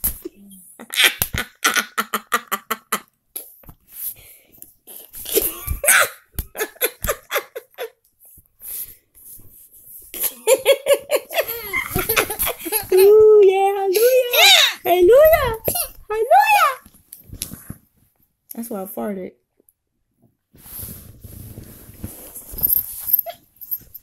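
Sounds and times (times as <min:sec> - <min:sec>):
breathy laughter: 0:10.2 - 0:13.0
voiced laughing or whimpering: 0:10.2 - 0:16.0.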